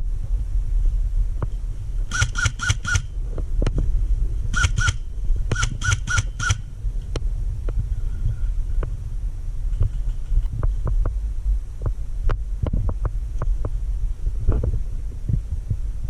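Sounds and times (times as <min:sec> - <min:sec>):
wind rumble on microphone: 0:00.0 - 0:16.0
sharp clicks: 0:02.1 - 0:03.1, 0:04.6 - 0:06.6.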